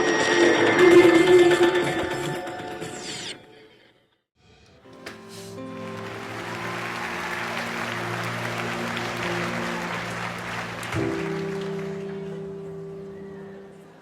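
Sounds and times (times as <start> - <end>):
audience applauding: 5.5 - 14.0.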